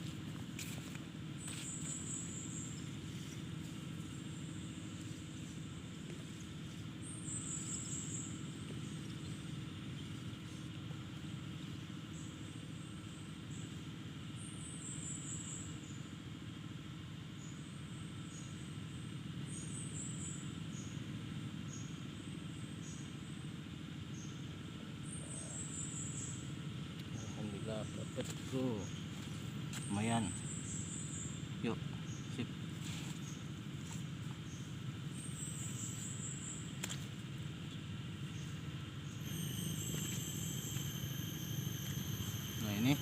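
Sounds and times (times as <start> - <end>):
insects buzzing: 0.0 - 16.2, 24.1 - 43.0
low steady rumble: 0.0 - 43.0
bird chirping: 6.2 - 10.6, 37.7 - 43.0.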